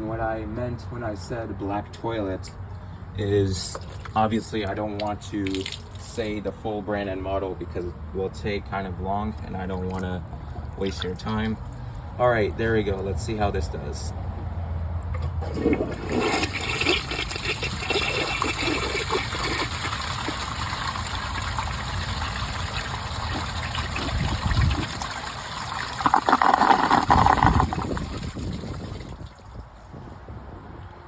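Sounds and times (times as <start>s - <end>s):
toilet flushing: 15.2s - 29.3s
loud gurgling gulp: 15.4s - 29.4s.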